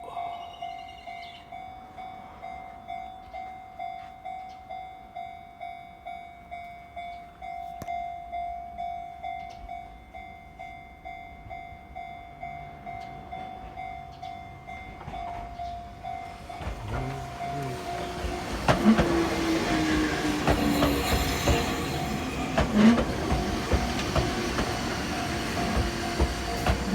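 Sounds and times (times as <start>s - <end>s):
electric train rumbling: 0.0s - 26.9s
level crossing warning bell ringing: 0.0s - 26.9s
train whine: 9.3s - 26.9s
wheel clacks over crossing: 14.8s - 26.9s.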